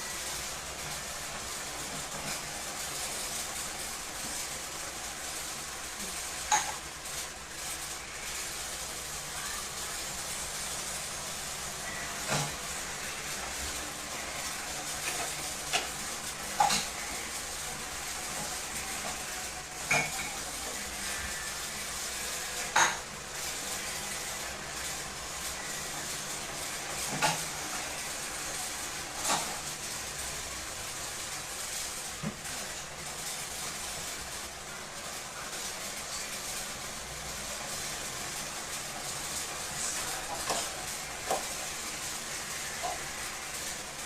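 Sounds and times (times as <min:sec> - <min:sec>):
steady hiss: 0:00.0 - 0:44.0.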